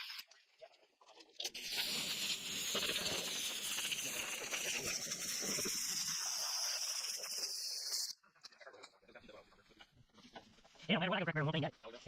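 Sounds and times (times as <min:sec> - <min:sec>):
compressed air hissing: 0:01.6 - 0:08.1.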